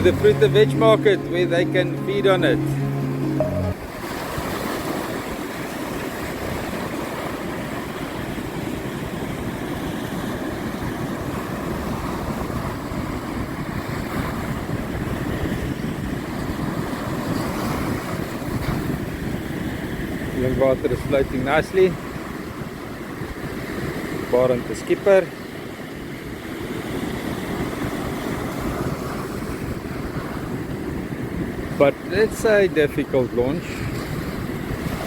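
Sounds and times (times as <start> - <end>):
waves and surf: 0.0 - 35.0
wind buffeting microphone: 6.2 - 21.4, 26.0 - 32.4, 33.3 - 35.0.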